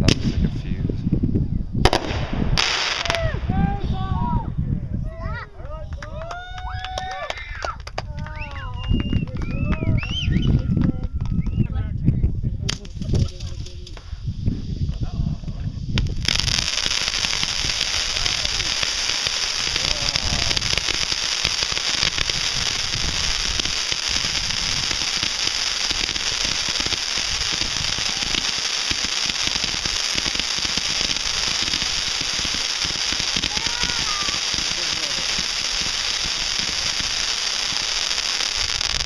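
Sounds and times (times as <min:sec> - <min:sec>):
firecrackers crackling: 0:01.8 - 0:03.7, 0:12.7 - 0:39.0.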